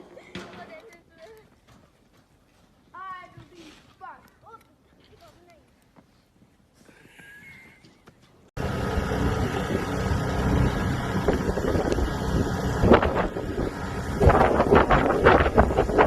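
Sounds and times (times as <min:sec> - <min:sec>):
wind blowing against microphone: 0:09.0 - 0:16.0.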